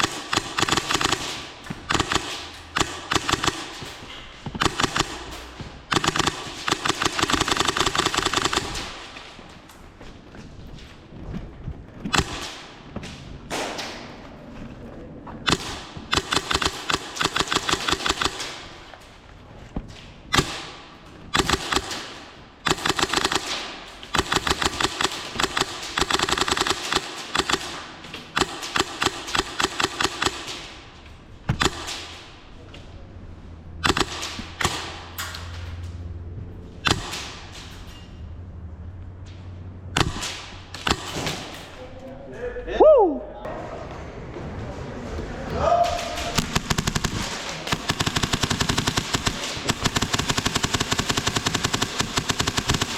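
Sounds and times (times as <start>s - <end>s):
airsoft guns firing bursts: 0.0s - 9.4s, 12.1s - 13.9s, 15.4s - 19.0s, 20.3s - 32.4s, 33.7s - 35.5s, 36.8s - 37.6s, 39.9s - 41.8s, 46.0s - 52.9s.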